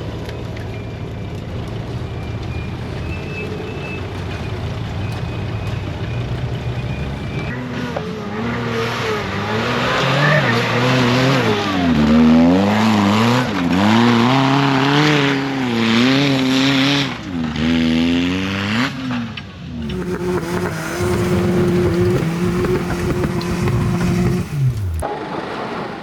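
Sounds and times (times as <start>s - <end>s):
engine running with rattling: 0.1s - 7.9s, 19.8s - 25.1s
engine revving: 1.4s - 25.2s.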